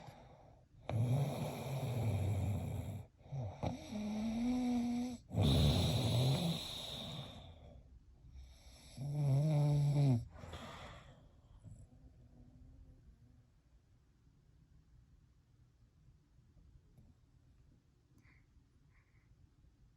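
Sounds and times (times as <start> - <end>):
person snoring: 0.9 - 7.6, 8.9 - 10.9.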